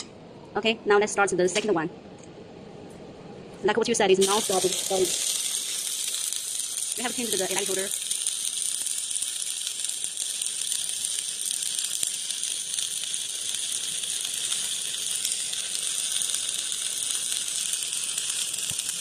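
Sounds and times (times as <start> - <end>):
welding arc crackling hiss: 4.2 - 19.0.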